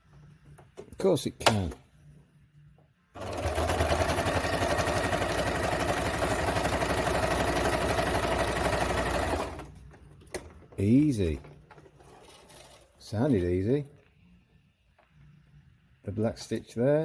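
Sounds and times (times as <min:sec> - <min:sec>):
sewing machine running fast: 0:03.2 - 0:09.7.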